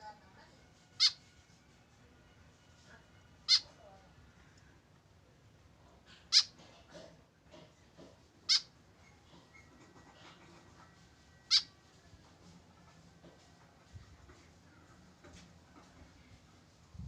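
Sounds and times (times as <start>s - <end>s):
bird giving sharp calls: 1.0s - 1.2s, 3.5s - 3.7s, 6.3s - 6.6s, 8.5s - 8.7s, 11.5s - 11.7s.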